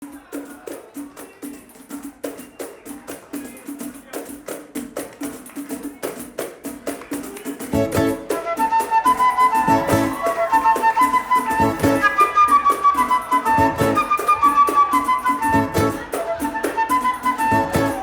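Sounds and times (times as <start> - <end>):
samba percussion: 0.0 - 18.0
band with bass and melody: 7.7 - 18.0.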